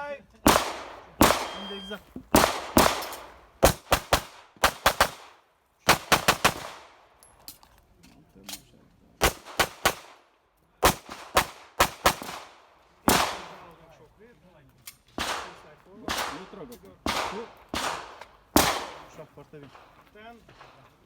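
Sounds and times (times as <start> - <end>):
handgun shots echoing: 0.4 - 5.3, 15.2 - 19.2.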